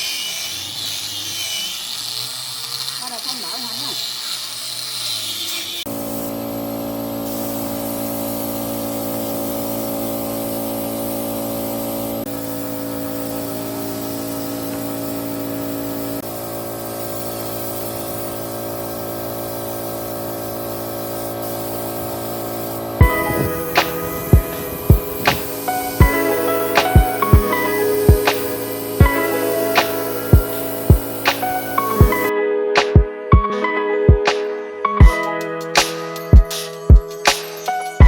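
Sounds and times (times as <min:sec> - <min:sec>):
sharp percussive hits: 0:23.0 - 0:33.1, 0:34.1 - 0:38.0
sustained music chords: 0:23.0 - 0:34.3.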